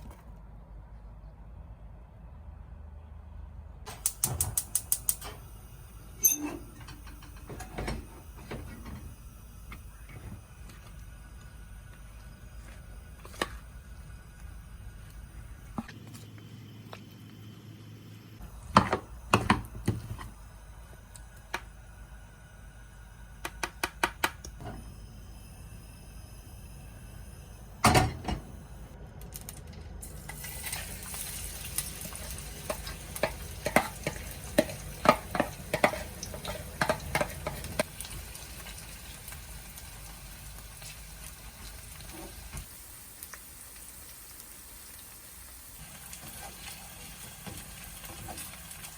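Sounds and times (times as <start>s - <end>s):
oil sizzling in frying pan: 30.0s - 48.9s.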